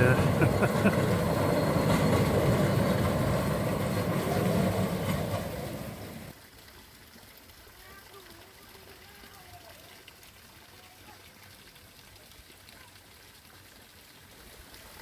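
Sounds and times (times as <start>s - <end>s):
small train engine and wheels: 0.0s - 15.0s.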